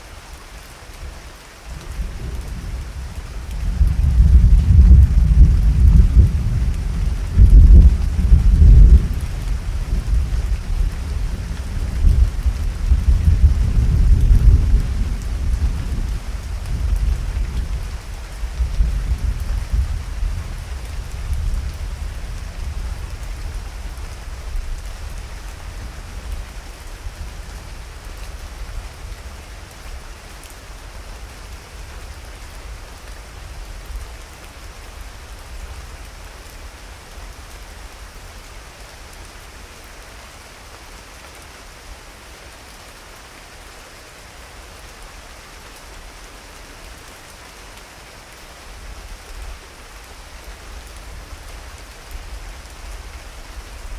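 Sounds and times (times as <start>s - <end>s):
heavy rain: 0.0s - 53.9s
thunder rumbling: 1.7s - 26.4s.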